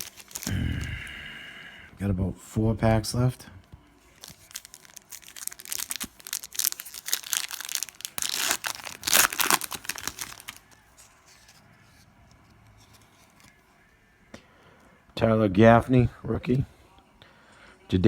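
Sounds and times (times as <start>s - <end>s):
foil pack tearing and crinkling: 0.0s - 0.9s, 4.2s - 10.8s.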